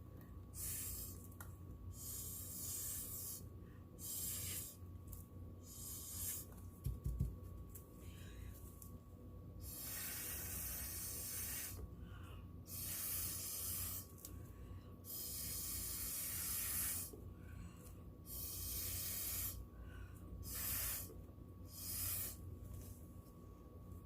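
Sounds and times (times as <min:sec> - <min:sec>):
hissing air blasts: 0:00.6 - 0:01.2, 0:20.4 - 0:21.1, 0:21.7 - 0:22.4.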